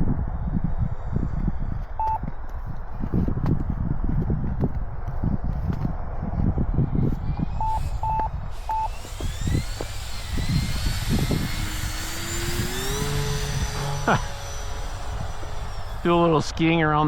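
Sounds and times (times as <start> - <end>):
electric motor and propeller whining: 0.0 - 17.0
short electronic beeps: 2.0 - 2.2, 7.6 - 9.0.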